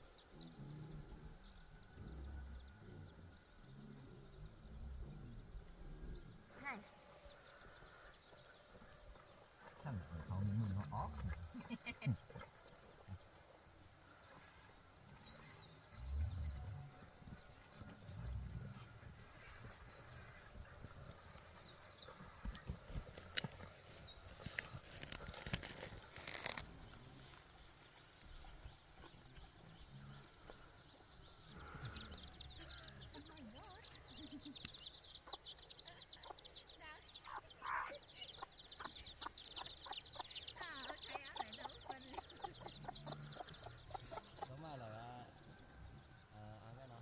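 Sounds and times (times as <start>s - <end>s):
quiet rural background: 0.0s - 47.0s
small birds chirping: 0.0s - 47.0s
low voice murmuring: 9.7s - 14.3s.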